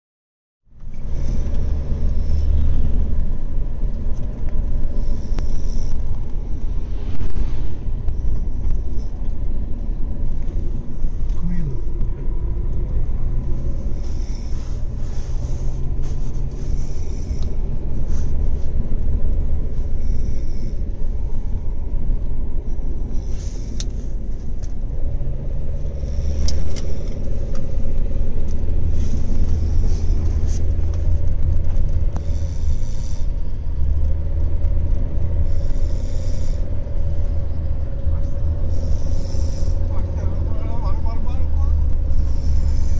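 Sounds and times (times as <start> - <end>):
car low rumble: 0.6 - 42.9
person snoring: 42.1 - 42.9.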